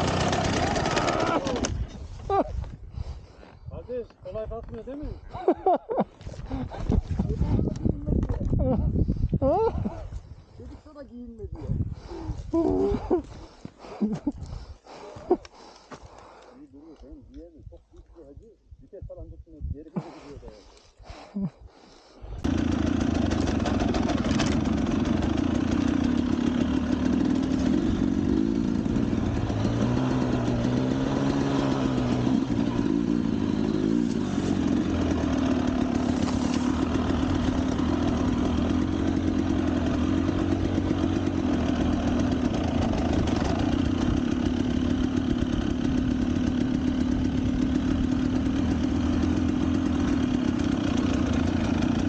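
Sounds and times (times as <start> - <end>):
motorcycle engine idling: 0.0 - 1.8, 22.4 - 52.0.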